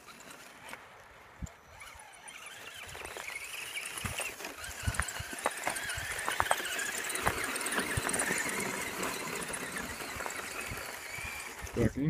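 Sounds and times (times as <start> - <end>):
rc truck motor whining: 0.0 - 12.0.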